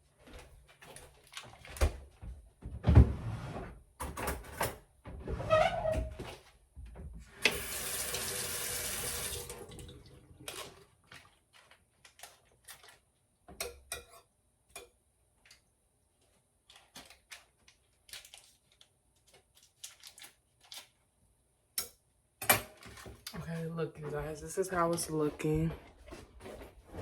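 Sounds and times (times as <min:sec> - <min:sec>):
water running from tap into sink: 0:07.3 - 0:10.7.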